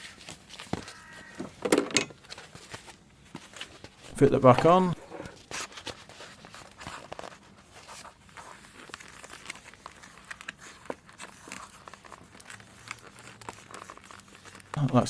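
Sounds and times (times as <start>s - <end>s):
small clicks and scrapes: 5.2s - 14.8s.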